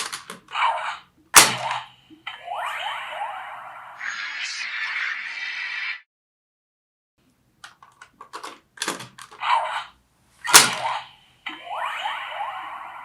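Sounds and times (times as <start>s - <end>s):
sweeping electronic effect: 2.2s - 6.0s, 11.5s - 13.0s
short electronic blasts: 2.3s - 6.0s.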